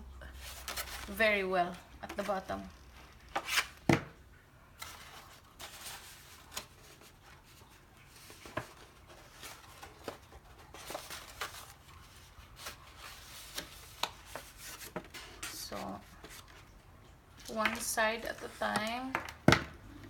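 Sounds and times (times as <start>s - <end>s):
paper rustling and crinkling: 0.4s - 4.0s, 4.8s - 16.8s.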